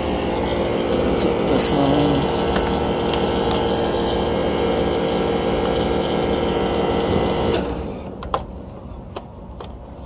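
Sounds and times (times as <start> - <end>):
machine motor humming and hissing: 0.0 - 8.0
machine winding down: 0.0 - 8.0.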